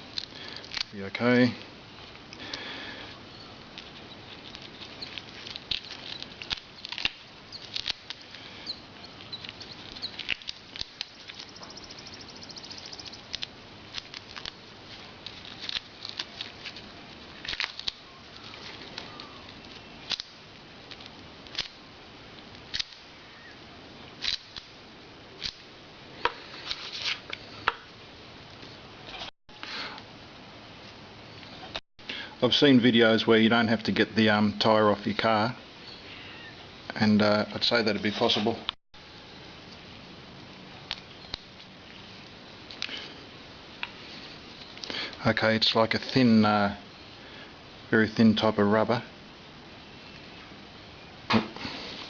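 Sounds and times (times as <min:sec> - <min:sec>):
small tools clicking and rustling: 0:03.4 - 0:08.4.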